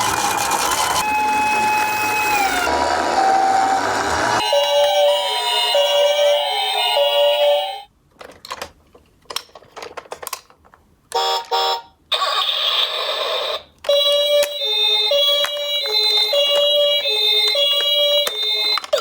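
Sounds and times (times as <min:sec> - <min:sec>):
two-tone ambulance siren: 0:00.0 - 0:07.9, 0:13.9 - 0:19.0.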